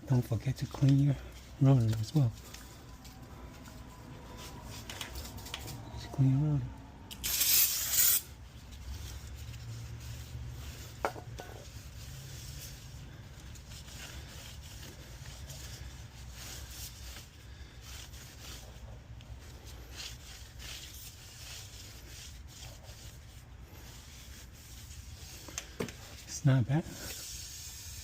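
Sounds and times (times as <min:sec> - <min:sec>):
cloth wiping brake disc: 0:07.3 - 0:28.0.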